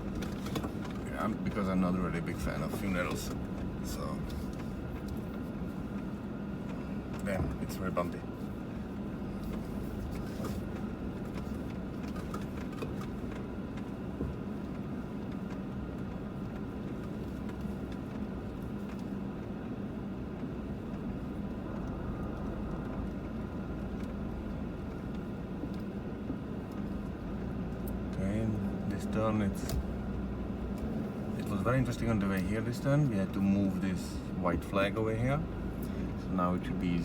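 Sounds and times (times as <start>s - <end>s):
vehicle engine running: 0.0s - 37.0s.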